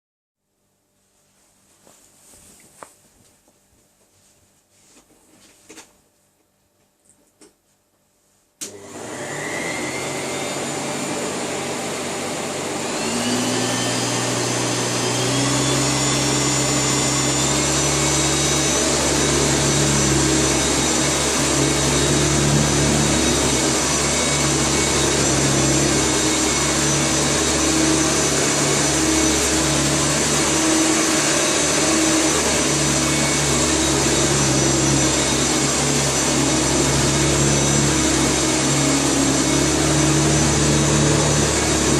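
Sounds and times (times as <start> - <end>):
vacuum cleaner motor whining: 8.6 - 41.9.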